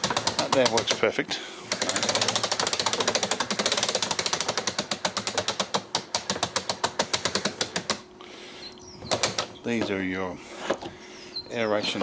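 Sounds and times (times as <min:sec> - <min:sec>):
plastic drum turning: 0:00.0 - 0:01.1, 0:01.7 - 0:08.0
ratchet mechanism clicking: 0:01.7 - 0:08.0.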